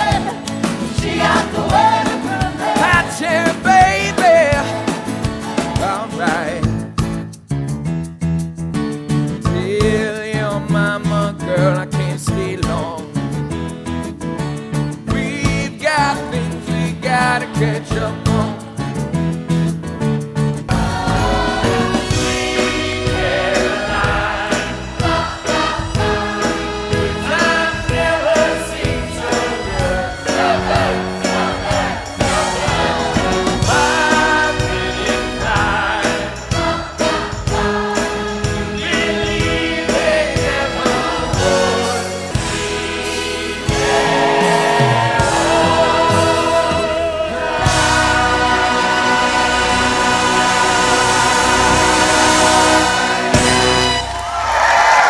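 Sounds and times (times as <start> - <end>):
choir singing: 0.0 - 6.6, 20.7 - 55.0
steady drum beat: 0.0 - 7.4, 20.7 - 55.0.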